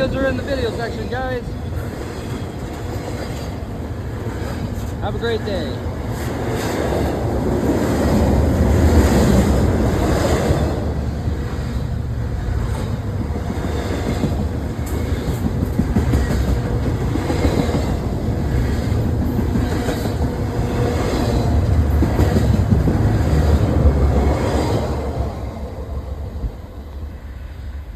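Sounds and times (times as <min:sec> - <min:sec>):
steel wheels rumbling on rail: 0:00.0 - 0:27.9.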